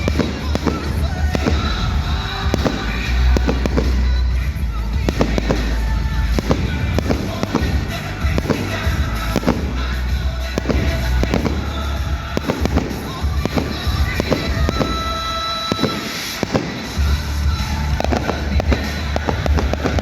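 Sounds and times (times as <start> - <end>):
fireworks bursting and crackling: 0.0 - 20.0
music with heavy bass: 0.0 - 20.0.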